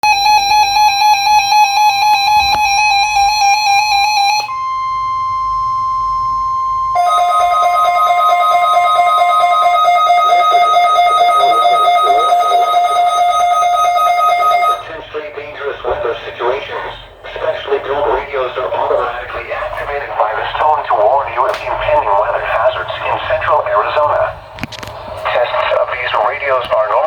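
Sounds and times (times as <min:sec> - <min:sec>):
steady high alarm tone: 0:00.0 - 0:15.1
lower steady tone: 0:00.2 - 0:15.0.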